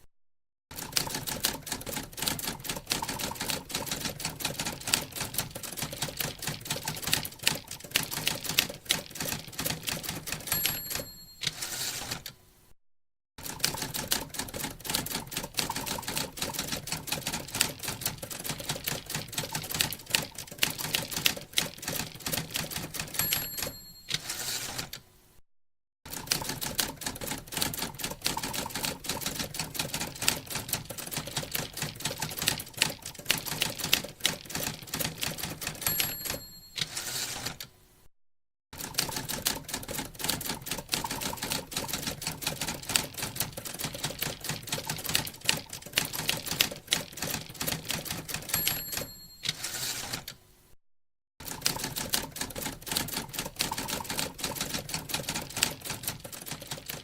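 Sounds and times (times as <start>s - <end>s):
typewriter keys clacking: 0.8s - 12.3s, 13.4s - 24.9s, 26.1s - 37.6s, 38.8s - 50.4s, 51.4s - 57.0s
typewriter carriage return: 0.8s - 12.4s, 13.5s - 25.0s, 26.1s - 37.7s, 38.8s - 50.4s, 51.4s - 57.0s
typewriter bell ding: 10.3s - 12.2s, 23.0s - 24.8s, 35.7s - 37.5s, 48.3s - 50.2s.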